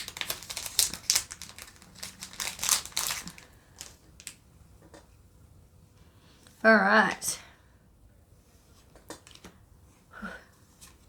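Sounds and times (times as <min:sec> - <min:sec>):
foil wrapper crinkling: 0:00.0 - 0:04.4.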